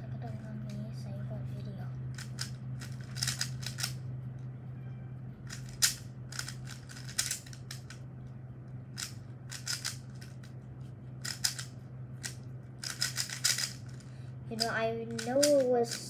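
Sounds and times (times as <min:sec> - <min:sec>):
steady low hum: 0:00.0 - 0:16.0
puzzle cube plastic clicks: 0:02.2 - 0:04.0, 0:05.5 - 0:08.0, 0:11.2 - 0:14.0.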